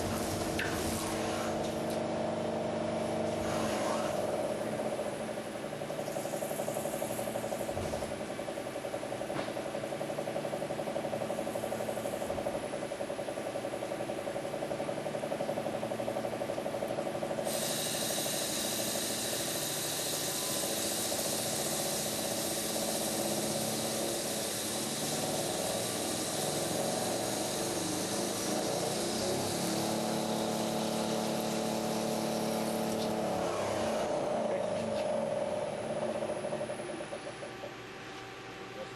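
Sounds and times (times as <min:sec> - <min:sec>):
lathe motor hum: 0:00.0 - 0:38.8
high hiss: 0:17.5 - 0:33.3.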